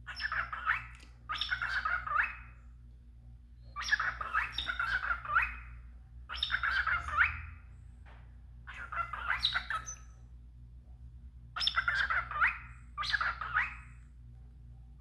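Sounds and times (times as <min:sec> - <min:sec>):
steady low hum: 0:00.0 - 0:15.0
cockatiel chattering: 0:00.1 - 0:02.5, 0:03.8 - 0:05.7, 0:06.3 - 0:07.6, 0:08.7 - 0:10.0, 0:11.6 - 0:13.9.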